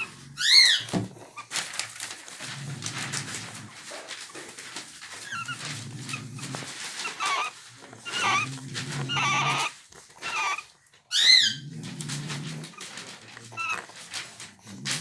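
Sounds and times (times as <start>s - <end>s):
dog snoring: 0.0s - 1.4s, 5.2s - 15.0s
puppies squeaking and whining: 0.0s - 2.1s, 4.3s - 14.2s.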